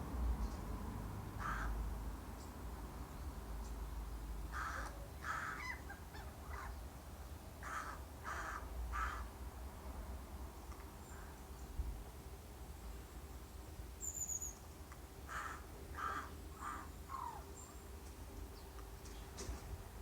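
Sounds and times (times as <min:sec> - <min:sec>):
crow cawing: 0:01.4 - 0:01.8, 0:04.5 - 0:05.8, 0:07.6 - 0:09.3, 0:15.3 - 0:17.4.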